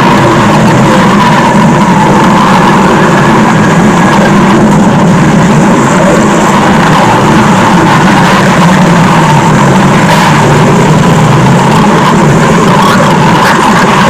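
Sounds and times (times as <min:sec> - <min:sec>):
stomach growl rumble: 0:00.0 - 0:14.0.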